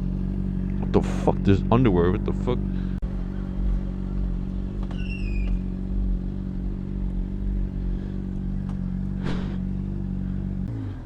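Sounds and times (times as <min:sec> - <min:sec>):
motorcycle engine running: 0:00.0 - 0:11.0
high squeal: 0:04.8 - 0:05.8.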